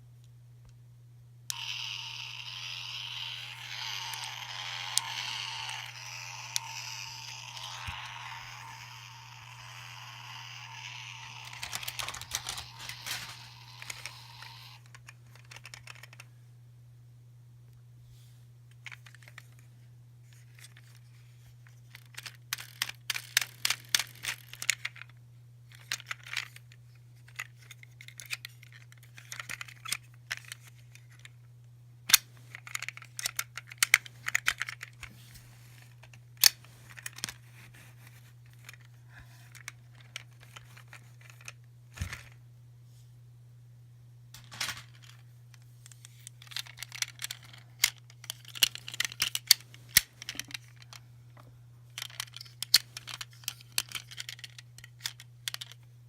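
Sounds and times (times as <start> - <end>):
steady low hum: 0.0 - 25.7
sharp plastic clicks: 1.5 - 16.2
plastic packaging crinkling and tearing: 10.7 - 14.8.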